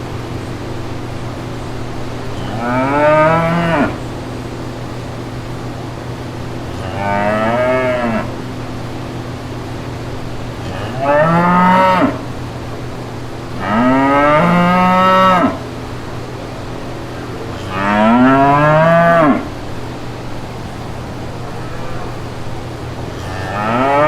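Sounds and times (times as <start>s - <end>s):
steady low hum: 0.0s - 24.0s
cow mooing: 2.3s - 4.0s, 6.7s - 8.4s, 10.6s - 12.3s, 13.6s - 15.6s, 17.5s - 19.5s, 21.3s - 24.0s.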